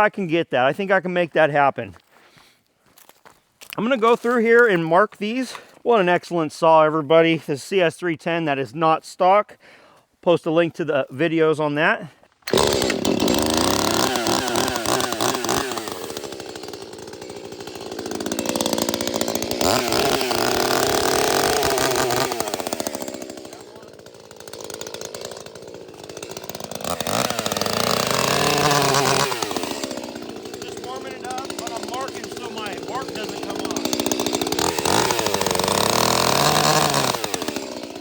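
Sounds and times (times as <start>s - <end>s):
chainsaw revving: 12.4s - 38.0s.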